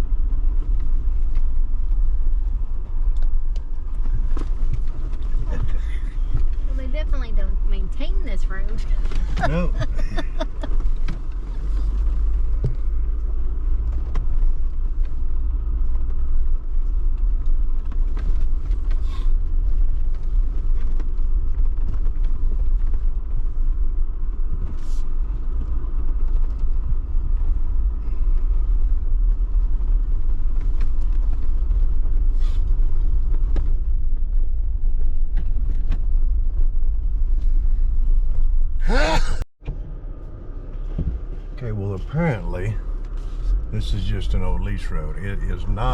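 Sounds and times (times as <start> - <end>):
vehicle engine and tyres rumbling: 0.0 - 45.9
vehicle body creaks and knocks: 40.7 - 41.6.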